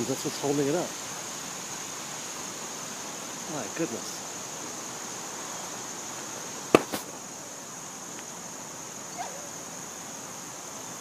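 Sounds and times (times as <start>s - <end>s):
insects chorus: 0.0s - 11.0s
sharp knock: 6.7s - 7.1s.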